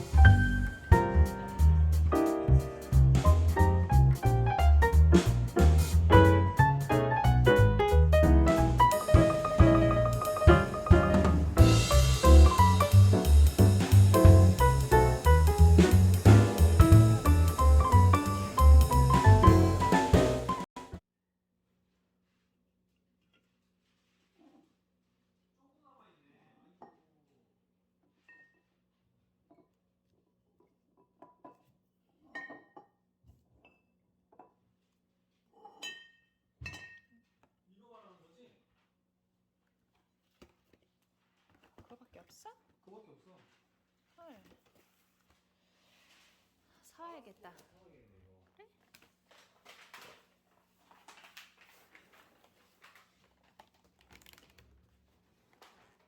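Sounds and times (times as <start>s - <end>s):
dishes and cutlery clinking: 35.6s - 37.2s.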